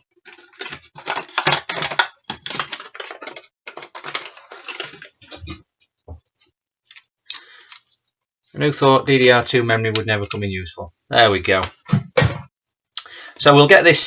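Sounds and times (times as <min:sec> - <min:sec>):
small hard objects clattering: 0:00.1 - 0:05.6.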